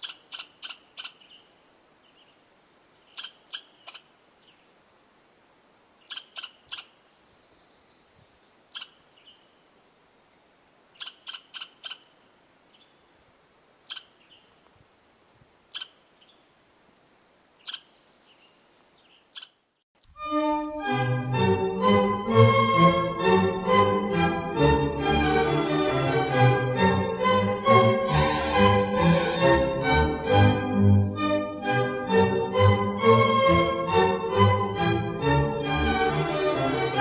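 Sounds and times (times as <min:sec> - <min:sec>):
small animal chip calls: 0:00.0 - 0:02.4, 0:03.0 - 0:04.6, 0:06.0 - 0:07.0, 0:08.7 - 0:09.5, 0:10.9 - 0:12.9, 0:13.8 - 0:14.6, 0:15.7 - 0:16.4, 0:17.6 - 0:20.1.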